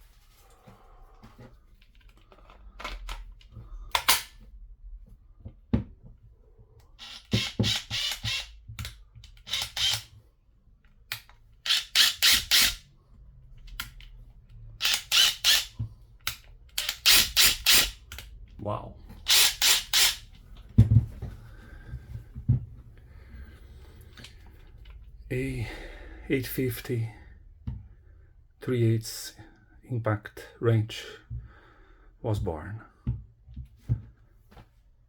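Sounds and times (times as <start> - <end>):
impact wrench running: 7.0 - 8.6, 9.4 - 10.1, 11.7 - 12.8, 14.8 - 18.2, 19.2 - 20.3.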